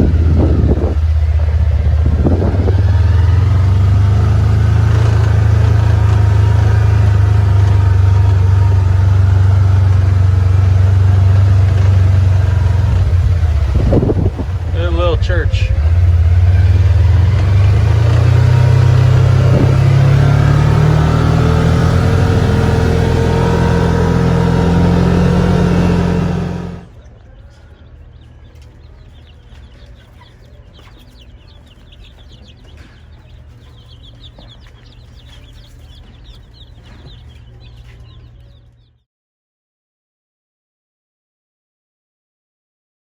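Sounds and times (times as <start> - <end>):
low hum: 0.0 - 26.9
vehicle engine running: 0.0 - 27.0.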